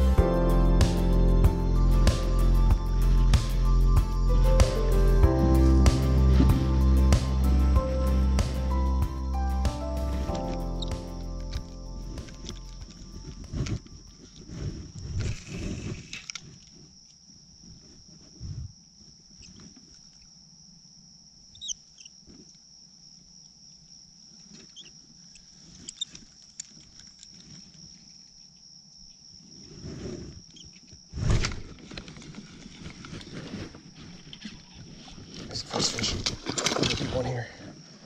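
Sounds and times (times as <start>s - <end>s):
high-pitched insect drone: 0.0s - 14.4s
rustling handling noise: 30.5s - 37.2s.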